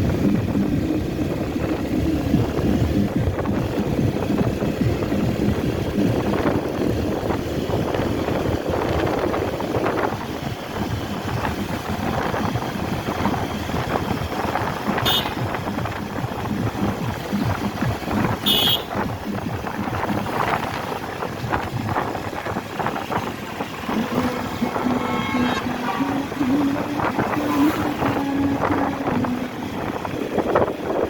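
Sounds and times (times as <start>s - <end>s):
motorcycle road noise: 0.0s - 31.0s
wind buffeting microphone: 0.0s - 31.0s
high-pitched tone: 23.5s - 30.2s.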